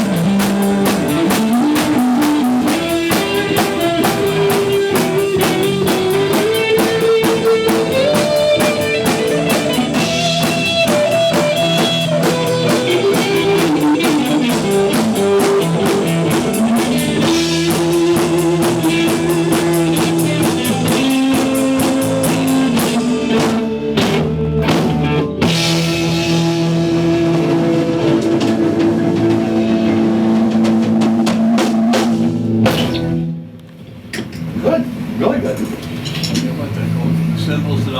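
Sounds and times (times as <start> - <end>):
fast cymbal beat: 0.0 - 24.2
guitar sustained notes: 0.0 - 33.6
rock band playing: 0.0 - 33.6.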